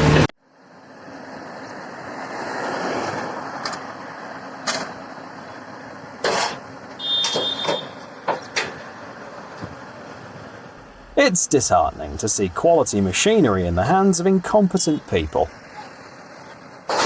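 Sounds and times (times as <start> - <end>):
excavator engine running: 0.0 - 2.2, 3.4 - 17.0
short high beep: 7.0 - 8.0.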